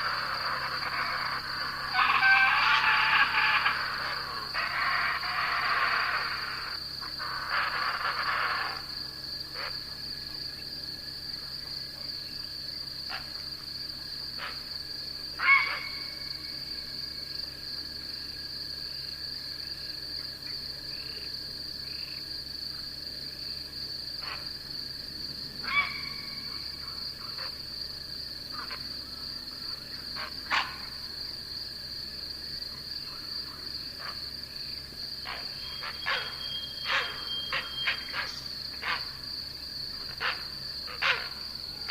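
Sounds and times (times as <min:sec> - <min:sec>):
sharp animal calls: 0:00.0 - 0:08.9, 0:15.4 - 0:16.1, 0:25.6 - 0:26.6, 0:30.2 - 0:30.9, 0:35.2 - 0:39.2, 0:40.0 - 0:41.9
insects trilling: 0:00.0 - 0:41.9.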